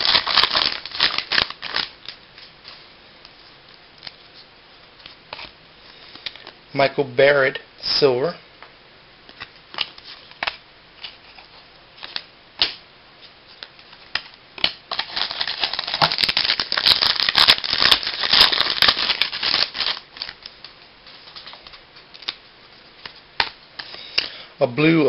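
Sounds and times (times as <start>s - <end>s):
cards rustling: 13.5s - 24.3s.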